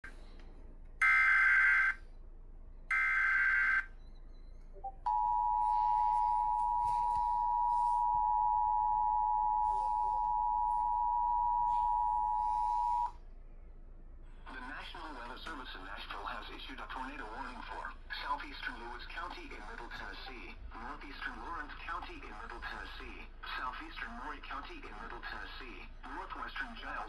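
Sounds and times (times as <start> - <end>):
two-tone attention signal: 5.1 - 13.1.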